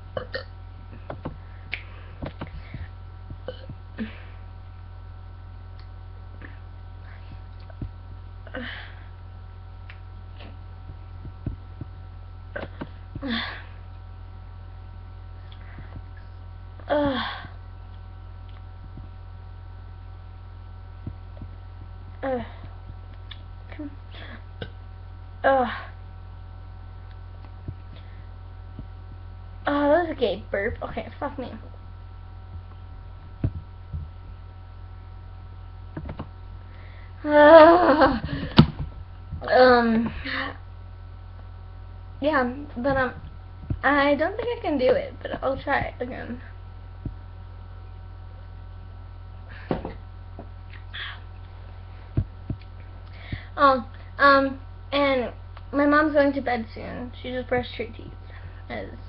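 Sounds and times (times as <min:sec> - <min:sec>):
steady low hum: 0:00.0 - 0:59.0
woman's wavering vocal sound: 0:16.8 - 0:17.6.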